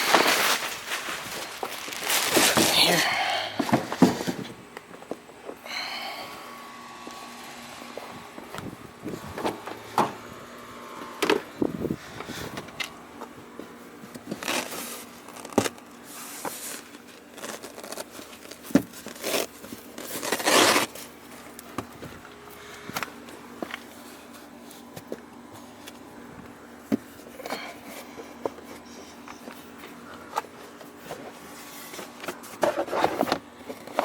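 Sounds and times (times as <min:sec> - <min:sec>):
floor mat scraping and rustling: 0:00.0 - 0:02.8, 0:14.2 - 0:21.1, 0:30.8 - 0:34.0.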